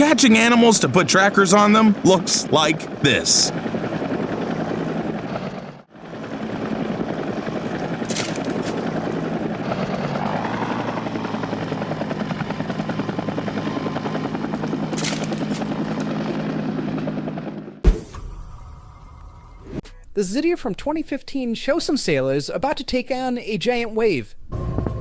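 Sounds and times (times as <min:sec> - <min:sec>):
helicopter rotor beating: 0:00.0 - 0:19.8.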